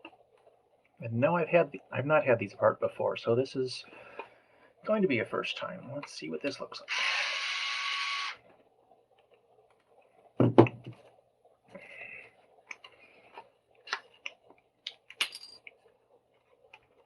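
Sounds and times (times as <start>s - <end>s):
plastic knocking: 10.4s - 11.0s.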